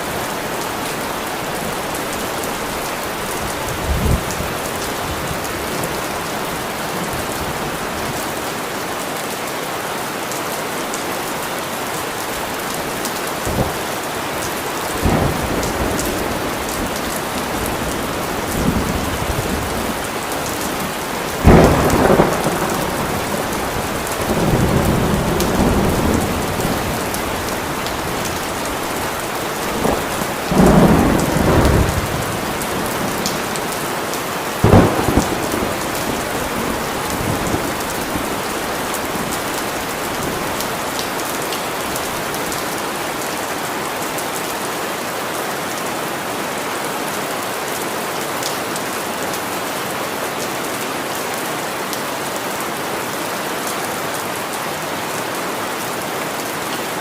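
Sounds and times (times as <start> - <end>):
heavy rain falling: 0.0 - 57.0
thunder rumbling: 15.0 - 33.8, 34.6 - 41.0
sharp thunderclap: 21.4 - 26.9, 34.6 - 37.9.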